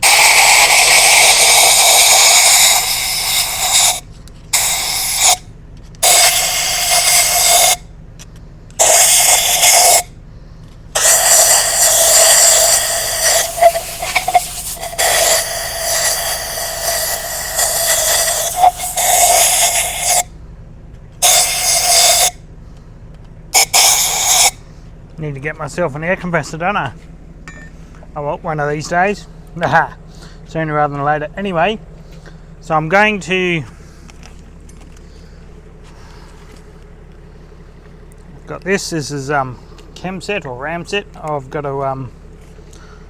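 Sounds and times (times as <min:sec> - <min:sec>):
compressed air blasting: 0:00.0 - 0:07.9, 0:08.8 - 0:10.2, 0:10.9 - 0:20.3, 0:21.2 - 0:22.4, 0:23.5 - 0:24.8
faint steady whistle: 0:11.0 - 0:20.3.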